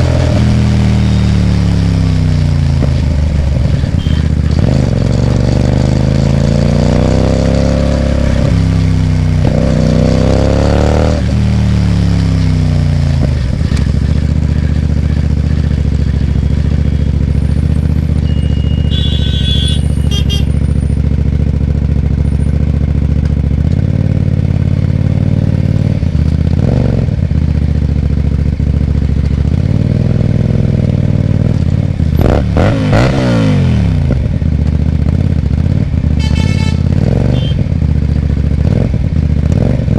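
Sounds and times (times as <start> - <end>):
motorcycle engine revving and idling: 0.0 - 39.9
short high beeping: 18.2 - 20.5.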